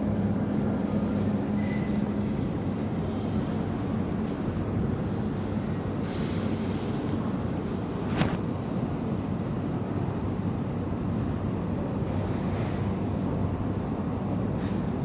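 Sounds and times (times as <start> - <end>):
street traffic rumble: 0.0 - 15.0.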